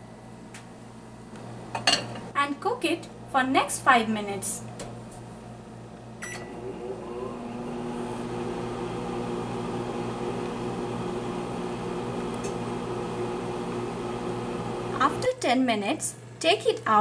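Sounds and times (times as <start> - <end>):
microwave oven humming: 0.0 - 17.0
microwave oven click: 12.2 - 12.8.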